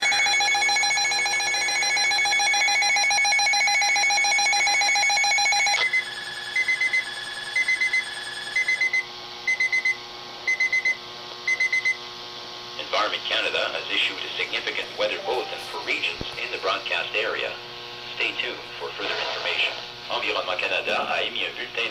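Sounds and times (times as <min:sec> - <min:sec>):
announcement voice: 0:13.2 - 0:17.2
warbling alarm tone: 0:15.1 - 0:15.9
short high beeps: 0:15.2 - 0:15.8.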